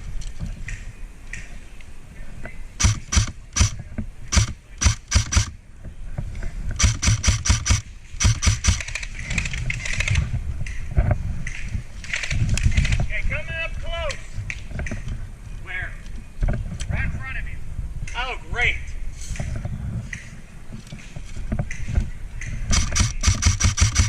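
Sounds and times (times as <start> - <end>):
airsoft gun shots: 2.8 - 5.6, 6.8 - 9.0, 22.7 - 24.0.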